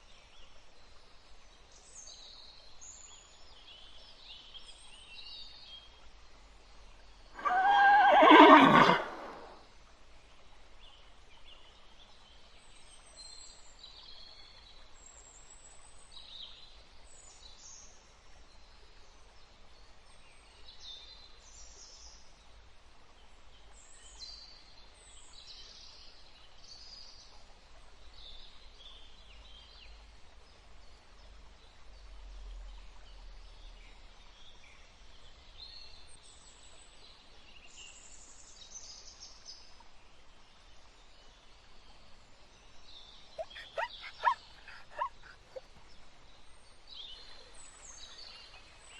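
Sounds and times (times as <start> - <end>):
faint background hiss: 0.0 - 48.9
high-pitched bird calls and chirps: 43.4 - 45.7.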